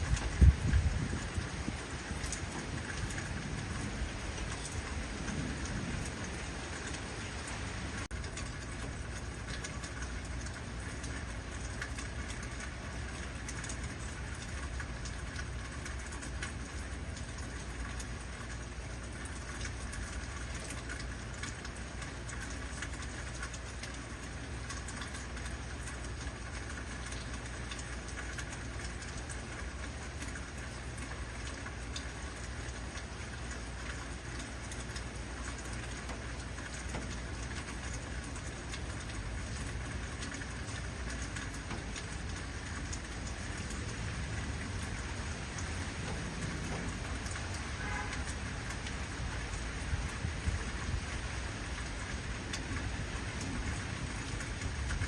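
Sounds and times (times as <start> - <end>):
thunder rumble: 0.0 - 7.3
heavy rain: 0.0 - 55.0.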